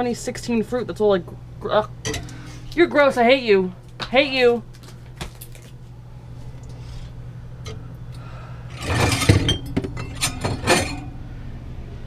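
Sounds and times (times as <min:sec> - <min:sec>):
glass bottles clinking: 0:08.7 - 0:11.1.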